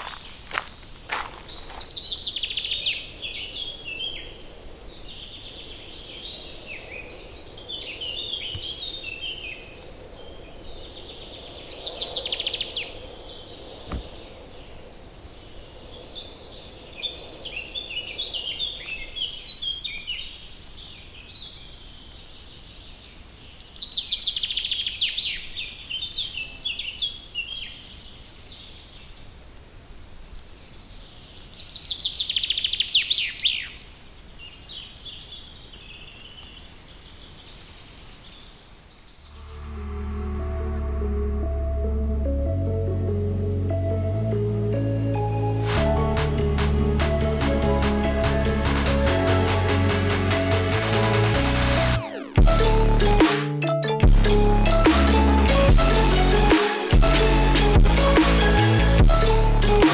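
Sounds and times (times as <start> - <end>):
birds chirping and trilling: 0.0 - 29.4.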